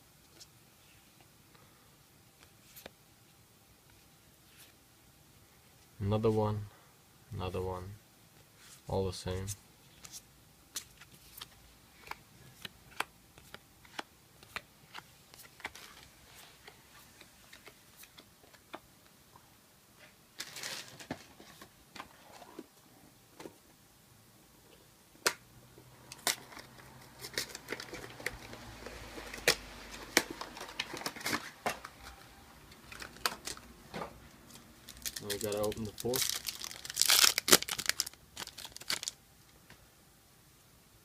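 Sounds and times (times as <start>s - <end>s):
packaging crinkling and rustling: 10.8s - 18.7s, 20.4s - 22.7s, 26.1s - 33.7s, 34.4s - 39.2s.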